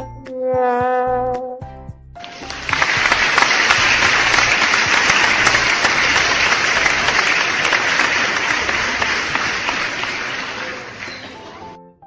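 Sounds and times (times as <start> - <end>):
crowd applauding: 2.2 - 11.8.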